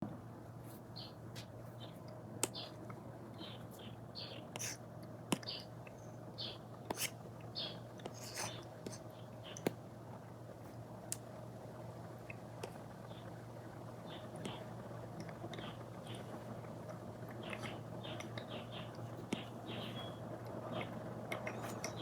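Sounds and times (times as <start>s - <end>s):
faint steady hum: 0.0s - 22.0s
stylus scratching on screen: 6.9s - 9.0s.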